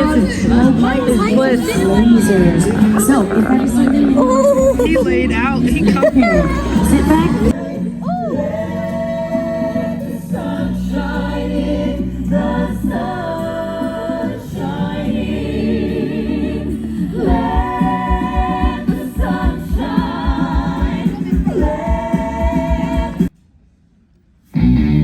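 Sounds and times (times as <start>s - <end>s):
backing track: 0.0s - 23.3s
steady drum beat: 17.1s - 23.3s.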